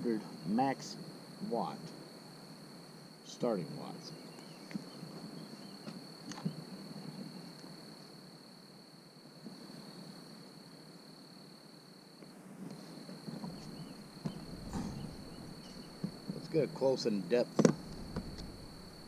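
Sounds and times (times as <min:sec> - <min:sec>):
insect trilling: 0:00.0 - 0:08.2, 0:12.7 - 0:19.0
faint outdoor background noise: 0:00.0 - 0:19.0.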